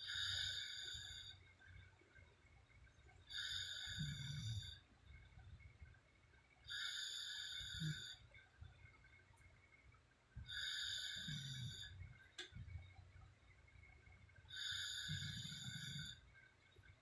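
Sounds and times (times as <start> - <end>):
woman snoring: 0.1 - 1.4, 3.3 - 4.8, 6.7 - 8.2, 10.5 - 11.9, 14.6 - 16.2.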